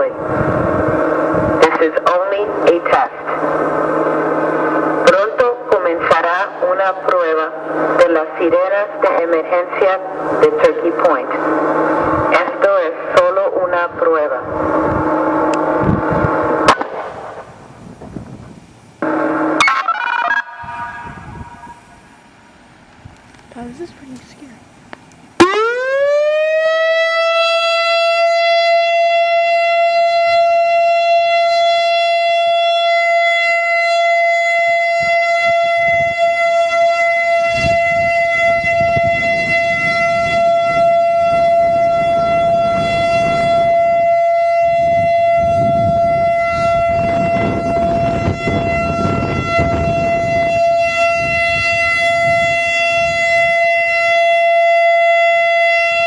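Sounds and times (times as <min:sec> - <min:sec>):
rushing noise: 0:00.0 - 0:06.6, 0:07.3 - 0:22.8
warning siren winding up: 0:00.0 - 0:17.4, 0:19.0 - 0:21.9, 0:25.4 - 0:56.0.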